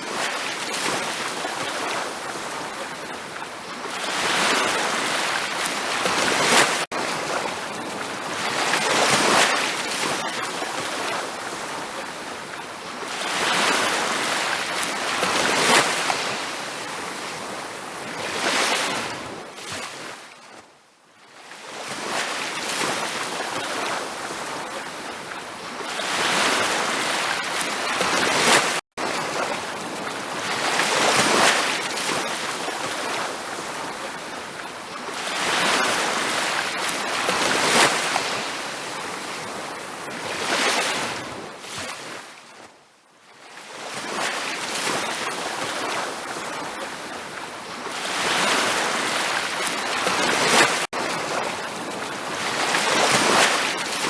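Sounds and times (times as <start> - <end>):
ocean waves breaking on beach: 0.0 - 54.0.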